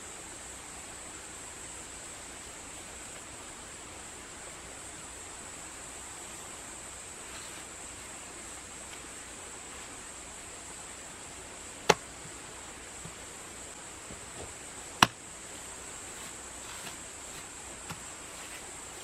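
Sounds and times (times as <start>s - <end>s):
outdoor hiss: 0.0s - 19.0s.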